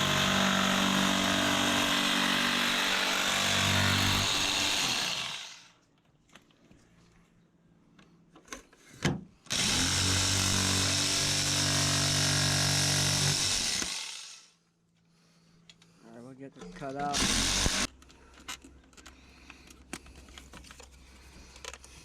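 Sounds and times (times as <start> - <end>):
power tool cutting plastic: 0.0 - 5.8, 9.5 - 14.5, 17.0 - 17.9.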